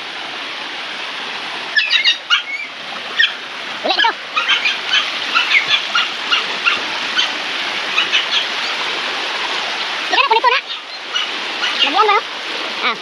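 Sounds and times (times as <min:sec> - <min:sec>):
running water rushing: 0:00.0 - 0:13.0
small birds chirping: 0:01.8 - 0:03.4, 0:04.3 - 0:08.8, 0:10.6 - 0:12.2.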